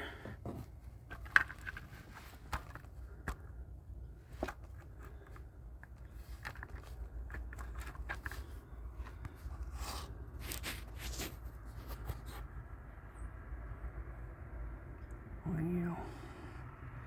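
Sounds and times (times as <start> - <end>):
handling clicks and knocks: 0.3 - 9.6.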